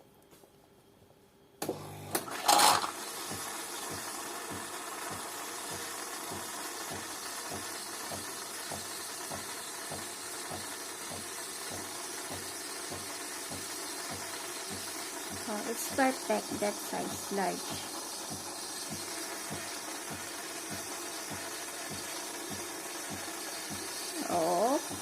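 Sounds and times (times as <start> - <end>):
coffee machine humming and pulsing: 1.6 - 25.0
coffee machine loud short burst: 1.7 - 4.3.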